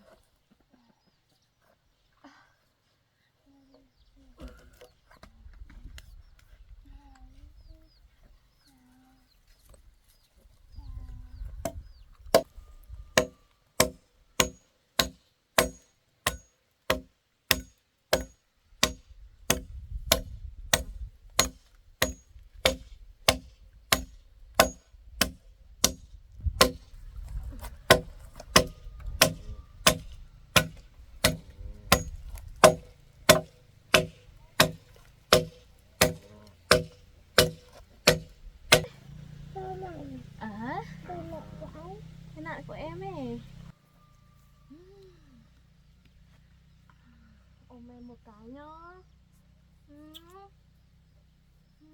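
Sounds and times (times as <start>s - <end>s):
blade chopping wood: 13.2s - 27.0s, 27.6s - 39.0s.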